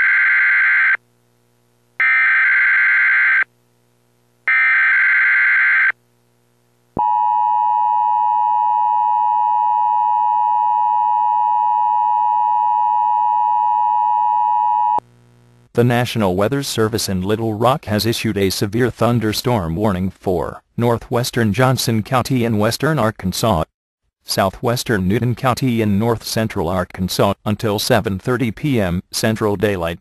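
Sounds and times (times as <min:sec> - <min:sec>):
steady attention tone: 0:07.0 - 0:15.0.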